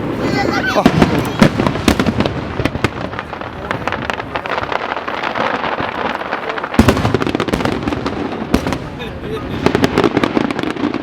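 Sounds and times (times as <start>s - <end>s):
loud firework bang: 0.0s - 5.9s, 6.5s - 11.0s
fireworks crackling: 0.0s - 11.0s.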